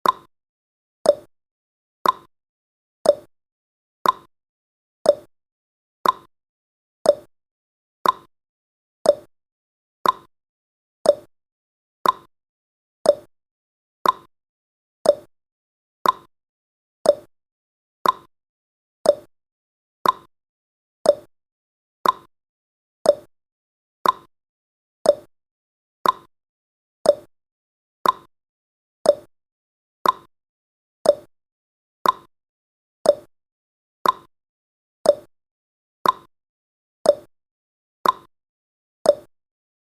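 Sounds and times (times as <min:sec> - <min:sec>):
timer ticking: 0:00.0 - 0:00.3, 0:01.1 - 0:01.3, 0:02.0 - 0:02.3, 0:03.0 - 0:03.3, 0:04.0 - 0:04.3, 0:05.1 - 0:05.3, 0:06.0 - 0:06.3, 0:07.0 - 0:07.3, 0:08.0 - 0:08.3, 0:09.0 - 0:09.3, 0:10.0 - 0:10.3, 0:11.0 - 0:11.3, 0:12.0 - 0:12.3, 0:13.0 - 0:13.3, 0:14.0 - 0:14.3, 0:15.0 - 0:15.3, 0:16.0 - 0:16.3, 0:17.0 - 0:17.3, 0:18.0 - 0:18.3, 0:19.0 - 0:19.3, 0:20.0 - 0:20.3, 0:21.0 - 0:21.3, 0:22.0 - 0:22.3, 0:23.0 - 0:23.3, 0:24.0 - 0:24.3, 0:25.0 - 0:25.3, 0:26.0 - 0:26.3, 0:27.0 - 0:27.3, 0:28.0 - 0:28.3, 0:29.0 - 0:29.3, 0:30.0 - 0:30.3, 0:31.0 - 0:31.3, 0:32.0 - 0:32.3, 0:33.0 - 0:33.3, 0:34.0 - 0:34.3, 0:35.0 - 0:35.3, 0:36.0 - 0:36.3, 0:37.1 - 0:37.3, 0:38.0 - 0:38.3, 0:39.1 - 0:39.3.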